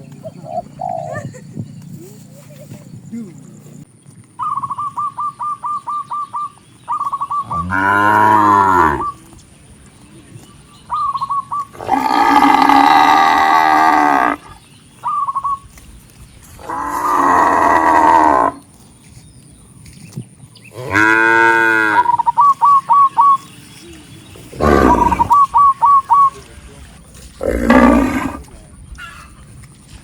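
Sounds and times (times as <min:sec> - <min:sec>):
bird calling: 0:00.0 - 0:03.8, 0:04.4 - 0:09.3, 0:10.4 - 0:15.8, 0:20.6 - 0:26.8
cattle mooing: 0:07.5 - 0:09.2, 0:11.8 - 0:14.4, 0:16.6 - 0:18.6, 0:20.8 - 0:22.2, 0:24.6 - 0:25.4, 0:27.4 - 0:28.4.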